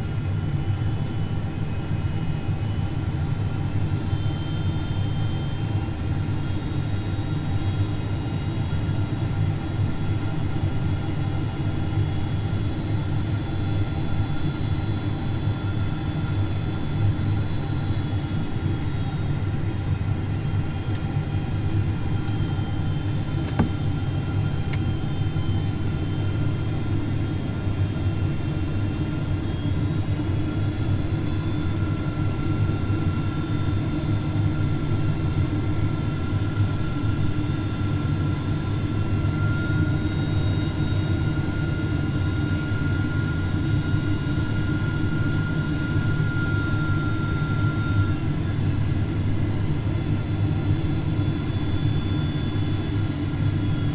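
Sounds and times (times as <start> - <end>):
airplane engines rumbling: 0.0 - 53.9
faint whining tones: 20.2 - 31.9.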